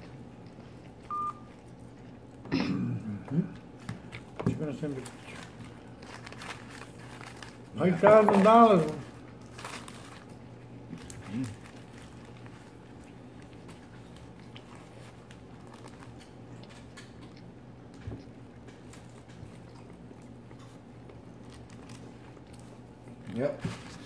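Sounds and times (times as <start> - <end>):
person chewing food: 0.0 - 4.4, 9.2 - 23.3
low steady hum: 0.0 - 24.0.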